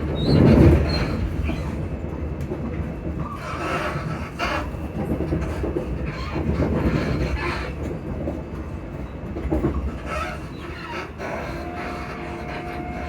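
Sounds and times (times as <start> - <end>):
steady train rumble: 0.0 - 13.0
electric train motors humming: 8.6 - 13.0.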